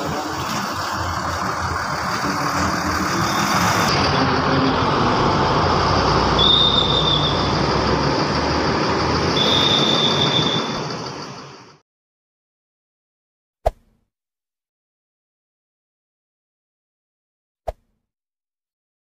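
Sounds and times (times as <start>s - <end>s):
bus engine running: 0.0s - 11.8s
short shrill high tones: 6.4s - 7.6s, 9.4s - 11.4s.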